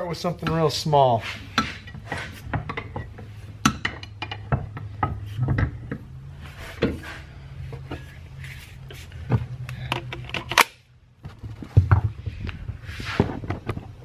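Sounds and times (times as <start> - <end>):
steady low hum: 0.0 - 14.0
scrap steel clanking: 0.3 - 10.7.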